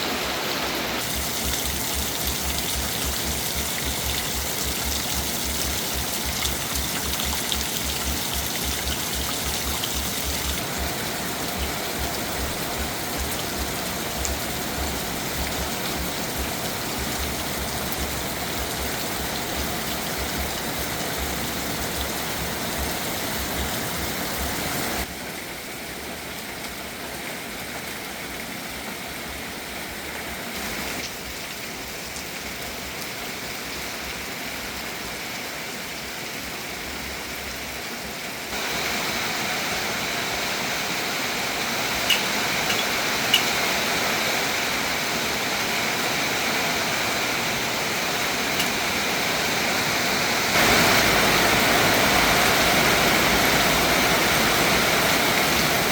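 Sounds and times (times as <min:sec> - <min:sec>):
steady rain hissing: 0:00.0 - 0:55.9
sharp drips or taps: 0:01.1 - 0:20.5, 0:42.0 - 0:43.6.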